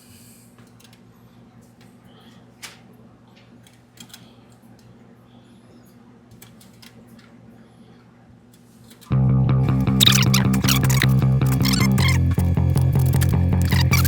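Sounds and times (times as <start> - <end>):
steady low hum: 9.1 - 14.0.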